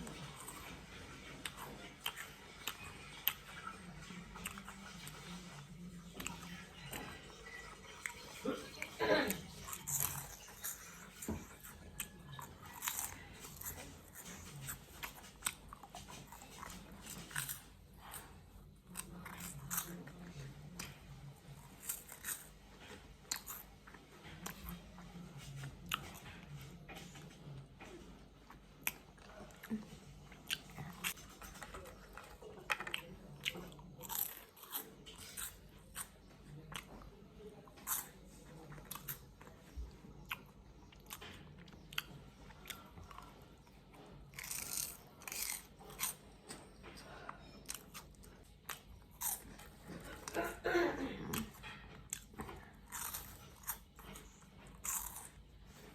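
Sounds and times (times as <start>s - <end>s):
crunching potato chips: 6.1s - 26.3s, 30.4s - 37.0s, 37.7s - 46.5s, 51.3s - 55.9s.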